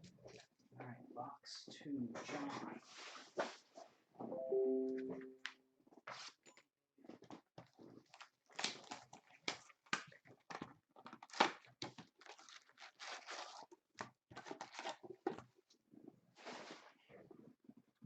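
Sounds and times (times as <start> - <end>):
plastic wrapping tearing and crinkling: 8.0 - 13.8, 14.4 - 15.0.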